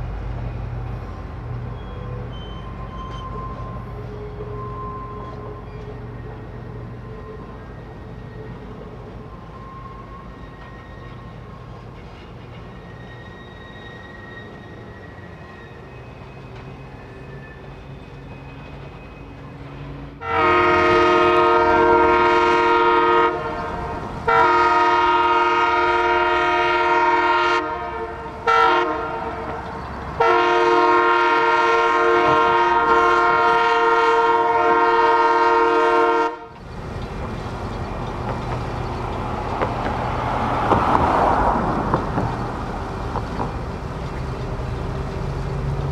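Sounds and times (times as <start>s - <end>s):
train rumbling past: 0.0s - 45.9s
train horn blasts: 20.2s - 36.6s.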